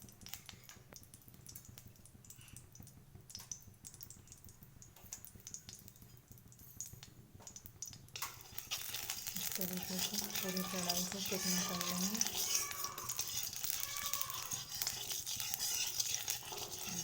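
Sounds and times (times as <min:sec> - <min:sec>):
spoon scraping in a pan: 0:08.2 - 0:17.0.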